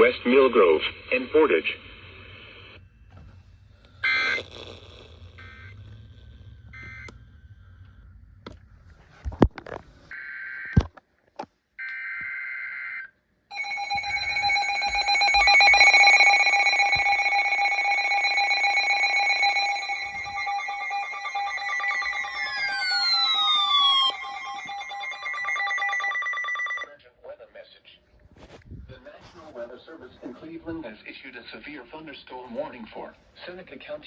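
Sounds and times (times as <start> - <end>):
two-tone attention signal: 13.5 - 26.9
warbling digital data bursts: 13.5 - 26.9.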